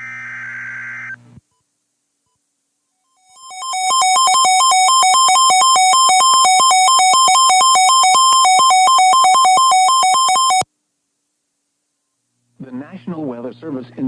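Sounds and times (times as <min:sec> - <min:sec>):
two-pitch alert warble: 0:03.2 - 0:10.6.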